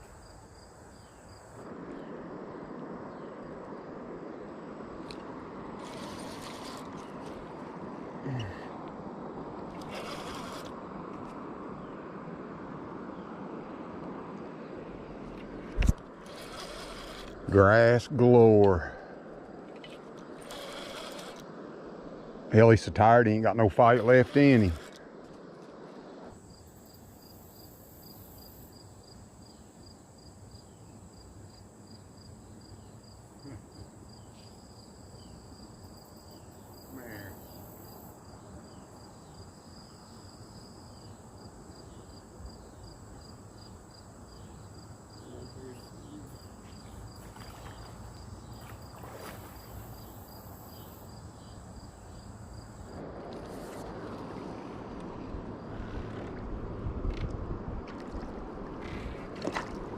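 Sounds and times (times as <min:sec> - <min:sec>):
insects chirping: 0:00.0 - 0:56.3
high-pitched insect buzz: 0:09.8 - 0:10.8.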